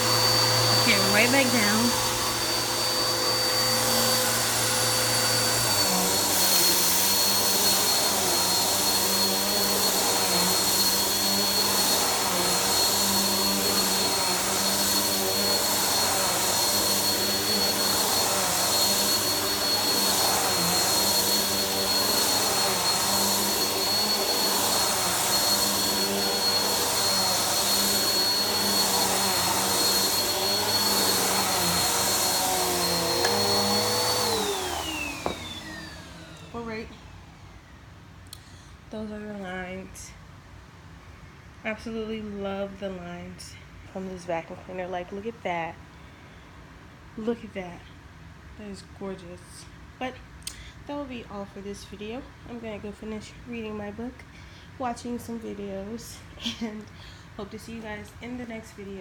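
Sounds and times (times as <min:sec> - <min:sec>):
vacuum cleaner on carpet: 0:00.0 - 0:37.3.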